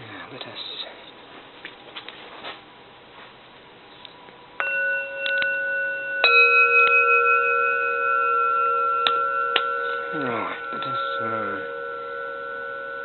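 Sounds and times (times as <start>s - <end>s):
temple bells ringing: 4.6s - 13.0s.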